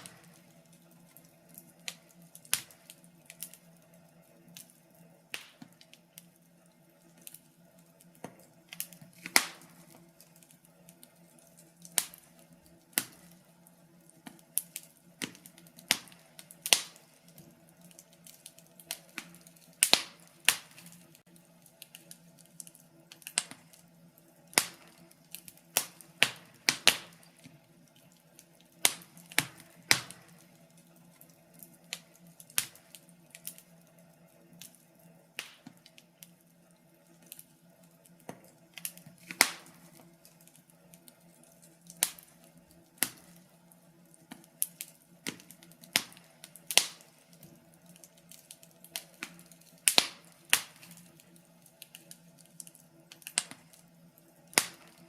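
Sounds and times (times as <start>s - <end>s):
wood fire crackling: 0.0s - 55.0s.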